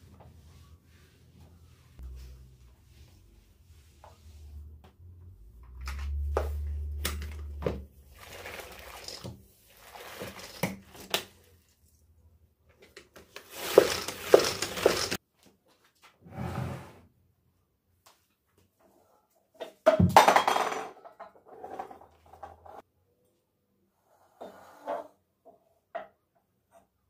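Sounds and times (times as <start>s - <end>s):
rustling: 13.4s - 15.2s.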